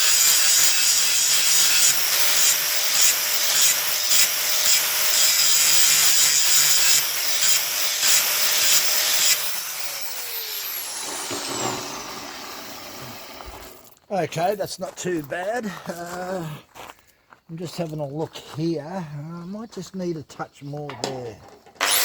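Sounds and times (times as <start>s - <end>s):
angle grinder grinding steel: 0.0s - 14.0s, 21.8s - 22.0s
grinder disc spinning down: 0.0s - 14.0s.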